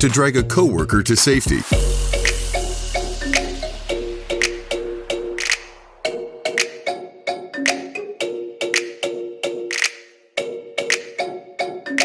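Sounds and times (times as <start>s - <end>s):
music with percussive beat: 1.3s - 12.0s.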